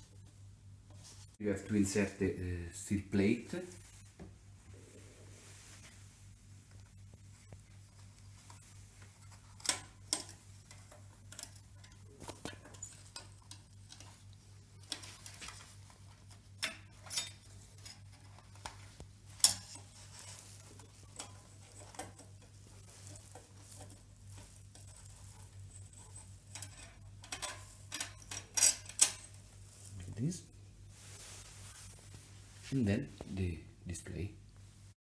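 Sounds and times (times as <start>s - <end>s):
low steady hum: 0.0s - 35.0s
small parts clicking and tapping: 7.2s - 29.9s.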